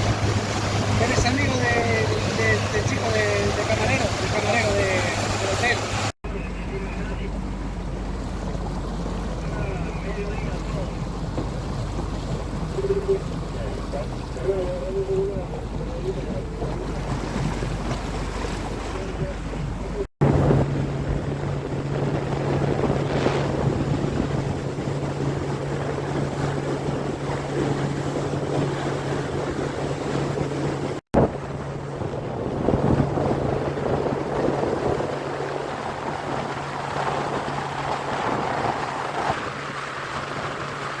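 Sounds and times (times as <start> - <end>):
wind on microphone: 0.0 - 6.1, 7.8 - 41.0
boat engine droning: 0.0 - 41.0
water rushing past hull: 0.0 - 41.0.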